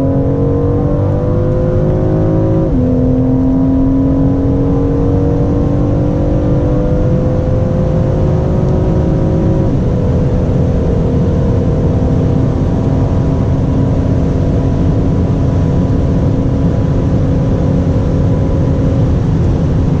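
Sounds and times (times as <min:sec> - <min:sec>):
car engine pulling hard: 0:00.0 - 0:20.0
road and wind noise: 0:00.0 - 0:20.0.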